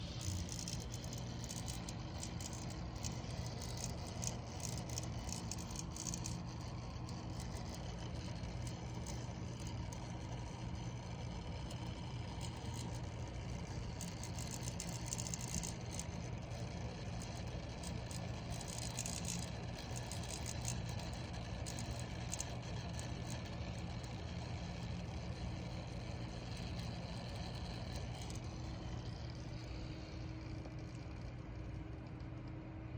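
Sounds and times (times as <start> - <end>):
grinding rattle: 0.0 - 24.2
pump humming: 0.0 - 32.9.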